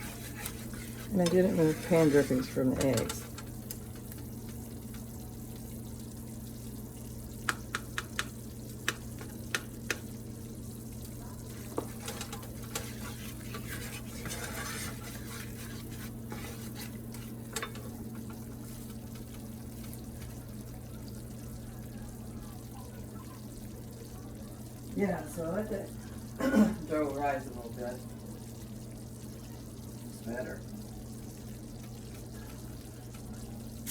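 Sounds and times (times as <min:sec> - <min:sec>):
utensil clicking against pan: 0:00.0 - 0:05.1, 0:07.4 - 0:10.1, 0:11.5 - 0:20.0
utensil stirring gravy in pan: 0:00.0 - 0:05.2, 0:10.9 - 0:20.4
sizzling: 0:00.0 - 0:33.9.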